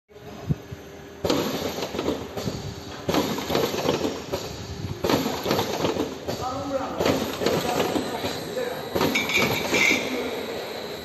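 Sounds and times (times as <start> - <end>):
cartoning machine clattering: 1.2 - 10.2.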